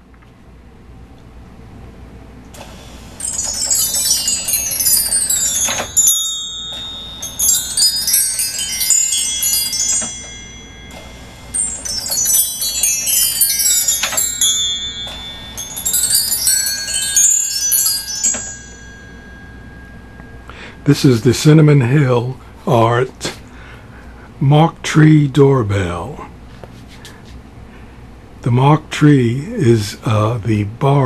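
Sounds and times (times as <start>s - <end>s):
chime bars doorbell glissando: 2.6s - 21.7s.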